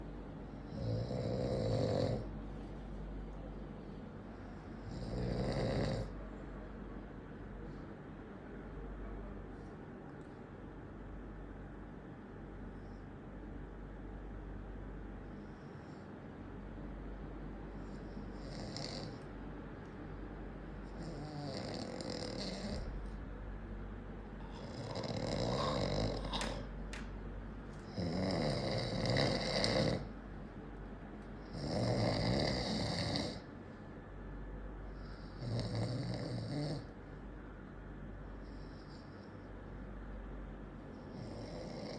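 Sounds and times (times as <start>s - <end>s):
quiet breathing: 0.0s - 6.8s, 12.6s - 13.4s, 15.1s - 16.7s, 17.5s - 27.0s, 27.6s - 30.6s, 34.8s - 37.2s, 38.1s - 39.9s, 40.8s - 41.9s
man snoring: 0.7s - 2.3s, 4.8s - 6.2s, 18.3s - 19.2s, 20.9s - 23.0s, 24.4s - 26.7s, 27.9s - 30.1s, 31.4s - 33.5s, 35.0s - 36.9s, 41.1s - 41.9s.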